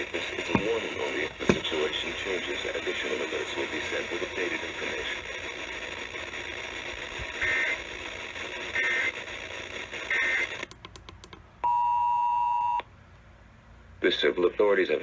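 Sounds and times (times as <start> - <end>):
clicks: 0.4 - 1.8.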